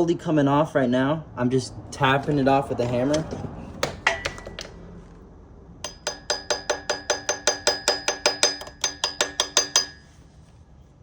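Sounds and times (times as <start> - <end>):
hammer tapping on metal: 5.8 - 10.0.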